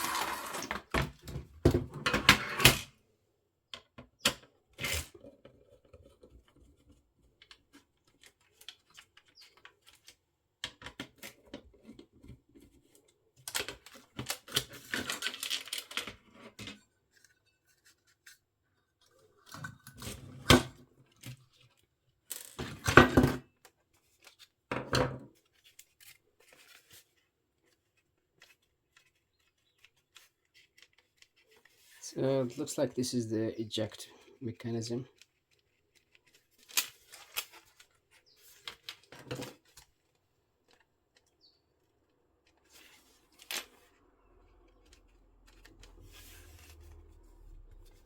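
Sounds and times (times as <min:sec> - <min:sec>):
scraping rub: 0:00.0 - 0:00.7
plastic parts clicking and knocking: 0:05.2 - 0:12.8.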